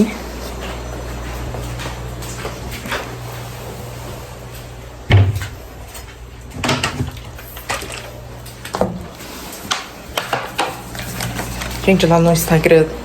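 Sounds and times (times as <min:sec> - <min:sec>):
steady low hum: 0:00.0 - 0:13.0
heavy thump: 0:05.1 - 0:05.7.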